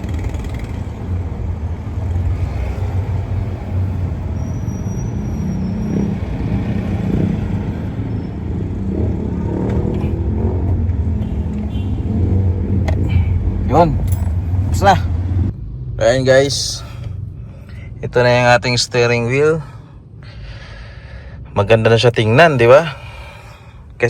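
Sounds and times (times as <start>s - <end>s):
vehicle engine running: 6.2s - 15.9s.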